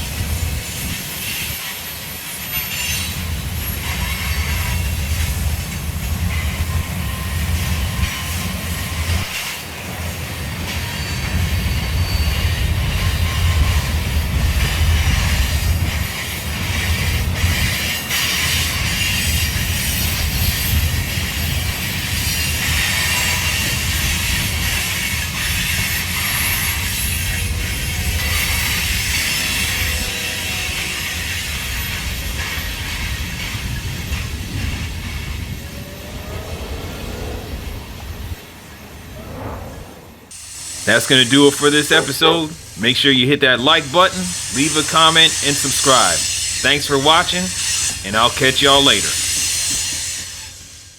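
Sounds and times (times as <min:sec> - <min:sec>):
train wheels squealing: 0:00.0 - 0:37.1, 0:44.3 - 0:50.9
wind rumble on microphone: 0:33.2 - 0:40.3.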